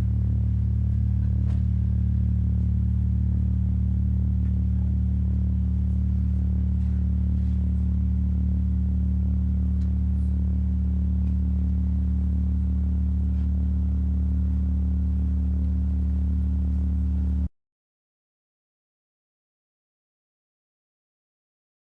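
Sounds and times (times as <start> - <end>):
amplifier drone: 0.0 - 17.5.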